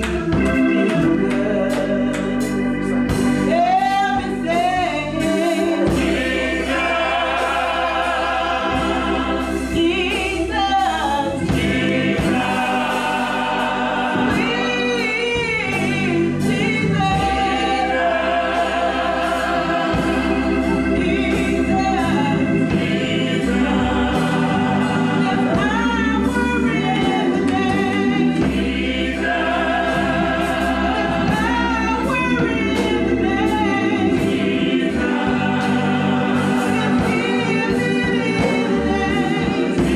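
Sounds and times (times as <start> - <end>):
gospel choir singing: 0.0 - 39.9
instrumental accompaniment: 0.0 - 39.9.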